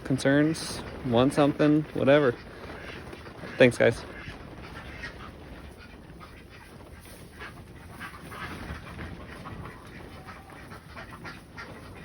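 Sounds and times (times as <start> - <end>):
farm animal calls: 0.0 - 12.0.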